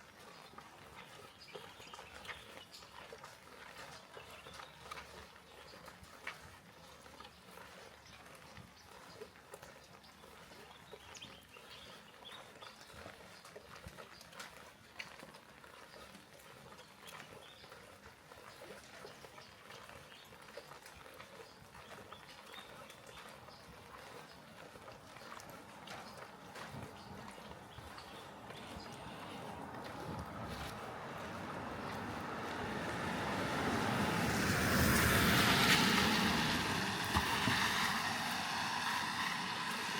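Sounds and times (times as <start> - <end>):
light rain patter: 25.7 - 39.9.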